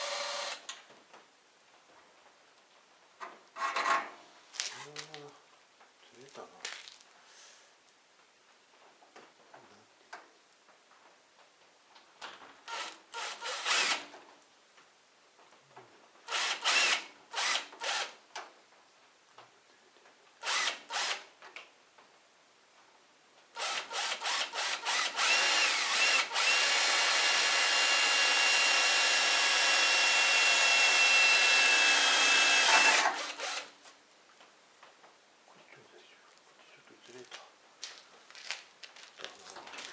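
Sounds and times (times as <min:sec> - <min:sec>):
power drill running: 0:00.0 - 0:00.6, 0:12.7 - 0:14.1, 0:16.3 - 0:18.1, 0:20.4 - 0:21.2, 0:23.6 - 0:33.7.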